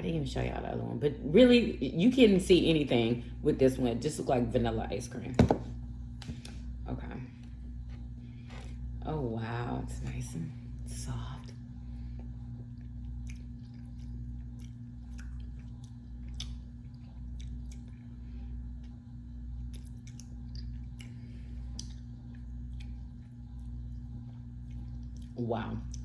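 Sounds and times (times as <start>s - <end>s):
low electrical hum: 0.0s - 26.0s
person chewing ice cream: 11.4s - 26.0s
wet mouth clicks: 13.2s - 16.6s, 19.7s - 22.1s.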